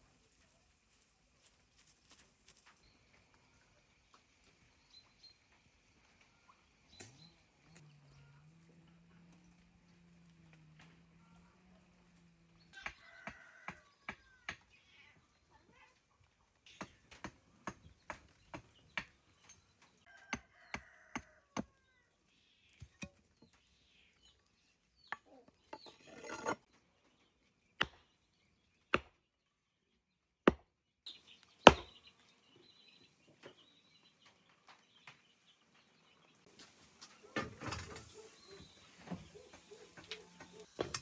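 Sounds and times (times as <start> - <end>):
chopping knocks: 31.7 - 31.9.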